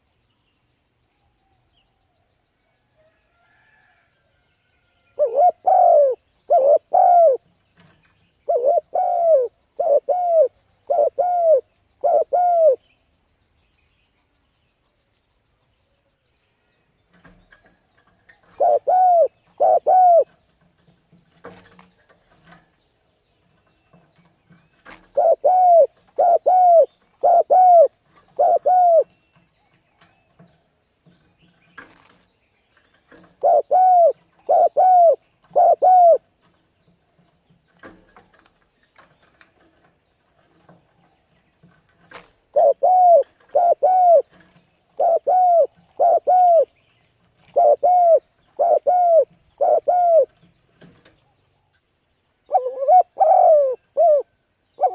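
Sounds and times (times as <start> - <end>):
dove cooing: 5.1 - 7.5, 8.4 - 12.8, 18.4 - 20.4, 24.9 - 29.1, 33.2 - 36.3, 42.5 - 46.7, 47.4 - 50.4, 52.5 - 54.9.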